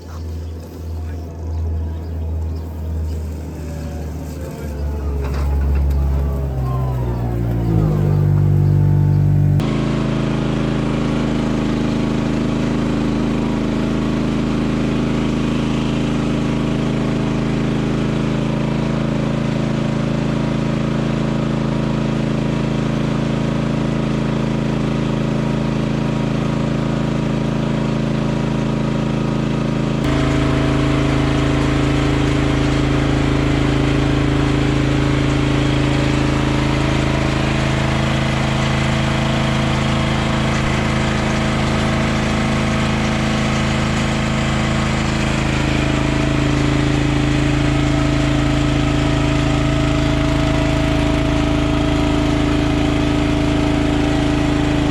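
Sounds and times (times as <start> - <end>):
machinery humming: 0.0 - 9.7, 30.1 - 51.8.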